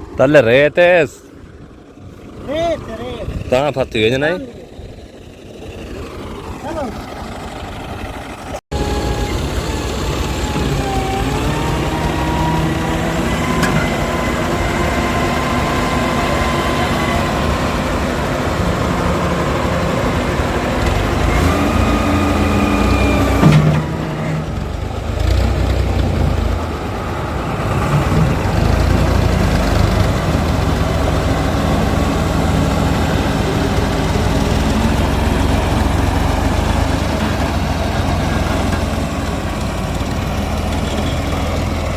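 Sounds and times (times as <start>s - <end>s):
diesel machinery engine running: 0.0s - 41.9s.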